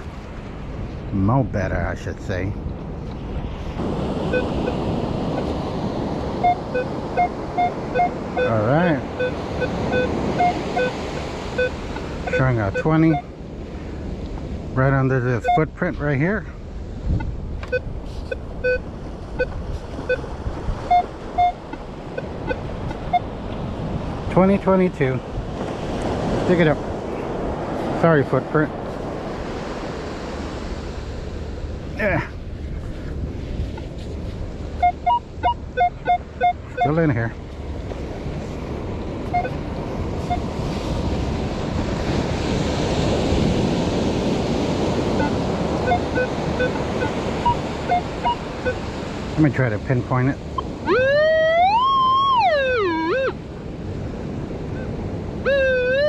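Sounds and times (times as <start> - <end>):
surf: 0.0 - 56.0
wind: 0.0 - 56.0
metal detector beeps: 4.3 - 4.8, 6.4 - 13.3, 15.4 - 15.7, 17.2 - 23.3, 34.8 - 37.0, 39.3 - 39.6, 40.2 - 40.5, 45.2 - 48.8, 50.5 - 53.4, 54.8 - 56.0.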